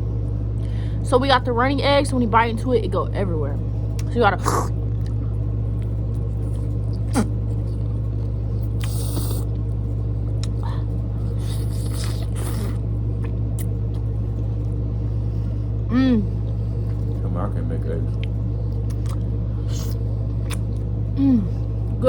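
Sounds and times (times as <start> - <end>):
steady low hum: 0.0 - 22.0
people chewing eggs: 4.5 - 14.8, 18.0 - 21.0
wet mouth noises: 6.9 - 7.4, 8.7 - 9.5, 11.3 - 14.0.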